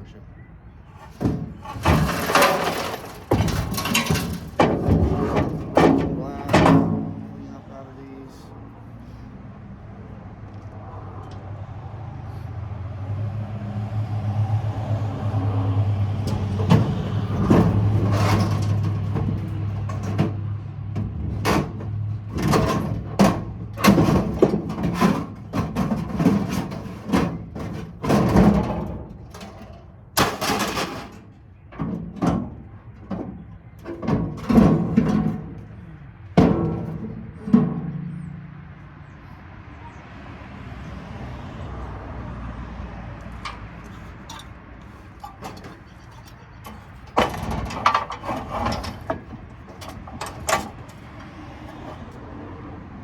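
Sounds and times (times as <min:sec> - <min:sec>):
metal parts clanking and banging: 0:00.9 - 0:08.1, 0:16.1 - 0:38.6, 0:43.1 - 0:52.4.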